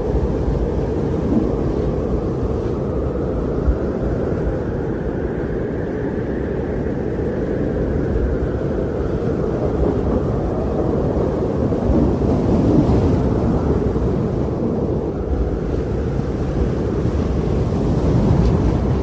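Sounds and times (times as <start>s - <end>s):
wind blowing: 0.0s - 19.0s.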